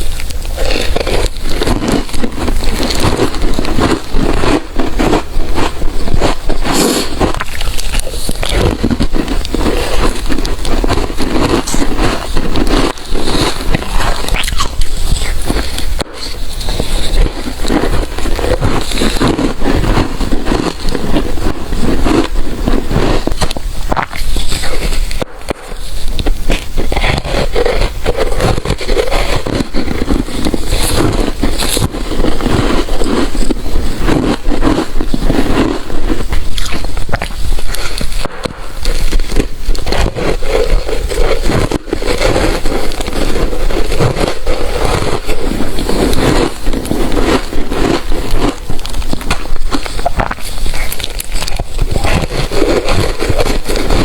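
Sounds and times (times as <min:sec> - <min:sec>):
ice crunching being chewed: 0:00.0 - 0:54.0.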